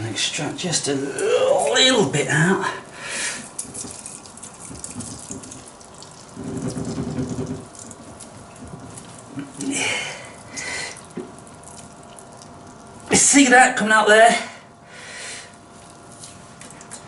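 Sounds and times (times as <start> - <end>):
liquid running out: 2.9 - 13.1
wet squelching: 3.4 - 13.1.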